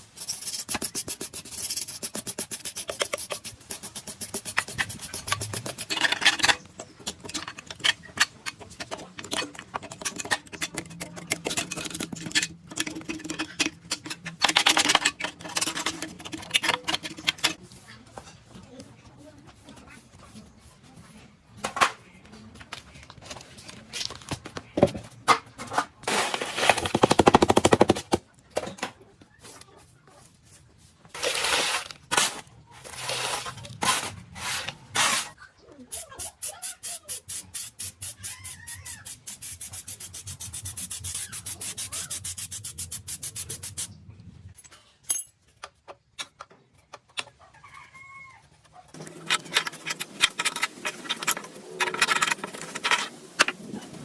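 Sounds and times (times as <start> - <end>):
metal scraping: 0.0 - 18.8, 29.8 - 35.4
tools clinking on metal: 44.6 - 46.4.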